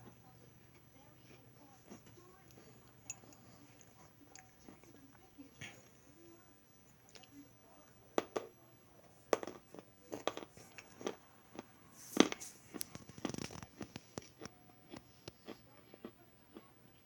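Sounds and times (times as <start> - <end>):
crisp crunching snaps: 9.4 - 16.2.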